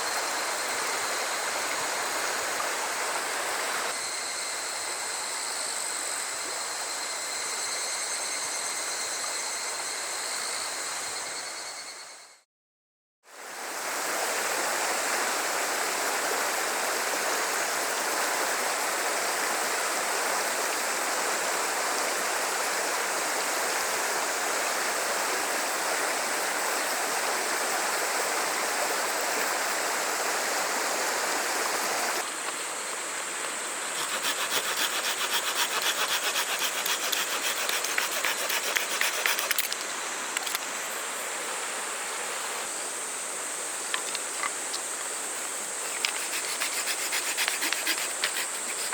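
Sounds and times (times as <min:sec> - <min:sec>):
small river rushing: 0:00.0 - 0:05.4, 0:13.3 - 0:48.9
high insect drone: 0:00.0 - 0:12.4, 0:13.4 - 0:48.9
folding saw cutting wood: 0:33.9 - 0:39.7, 0:46.0 - 0:48.9.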